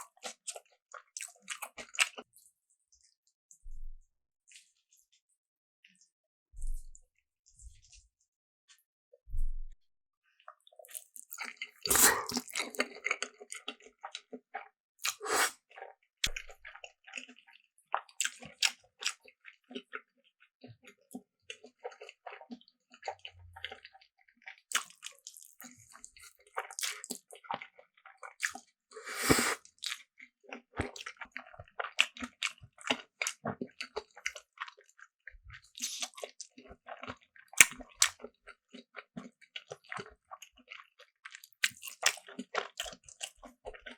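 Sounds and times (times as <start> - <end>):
wet squishy chewing: 0.0 - 2.3, 10.4 - 43.9
crunchy bites: 10.9 - 13.0
mouth clicks: 11.9 - 12.5.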